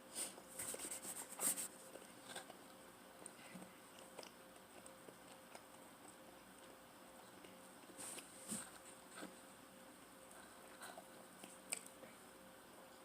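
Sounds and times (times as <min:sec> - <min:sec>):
person chewing pizza: 0:00.6 - 0:09.4.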